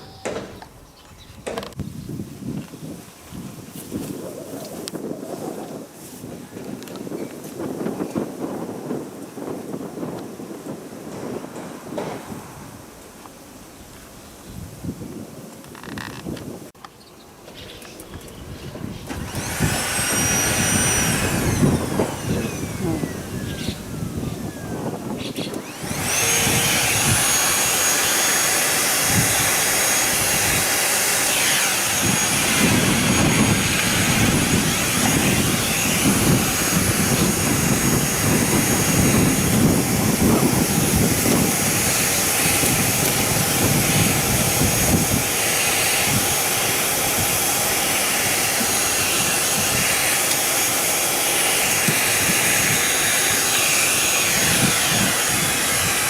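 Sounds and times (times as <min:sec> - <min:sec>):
vacuum cleaner running: 0:19.0 - 0:56.0.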